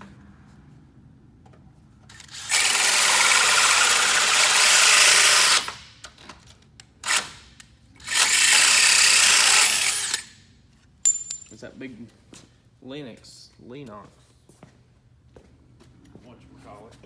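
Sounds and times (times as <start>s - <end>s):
drill clicks: 2.1s - 6.1s
drill cutting with hole saw: 2.2s - 5.8s, 7.0s - 7.4s, 8.0s - 10.4s.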